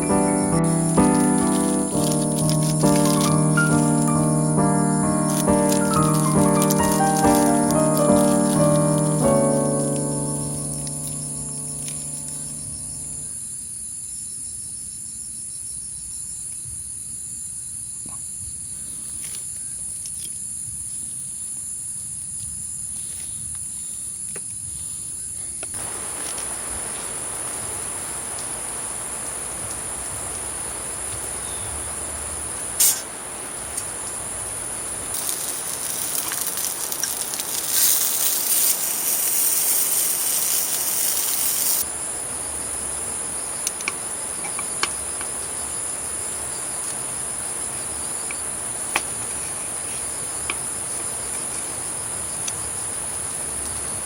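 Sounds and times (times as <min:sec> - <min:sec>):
crickets chirping: 0:00.0 - 0:54.0
hiss: 0:22.9 - 0:48.1.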